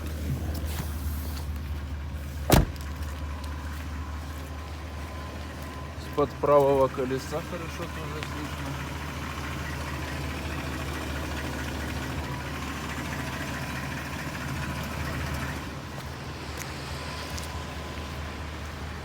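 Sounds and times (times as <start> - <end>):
car engine idling: 0.0 - 19.0
engine knocking: 3.3 - 16.2.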